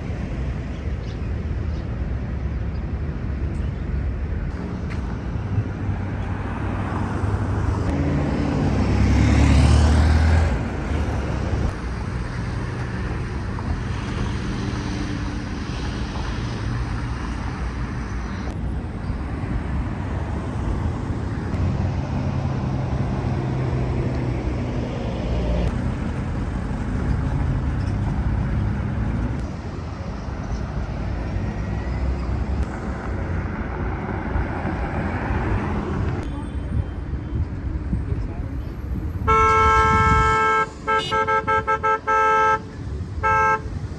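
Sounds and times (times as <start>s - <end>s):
vehicles driving past: 0.0s - 43.9s.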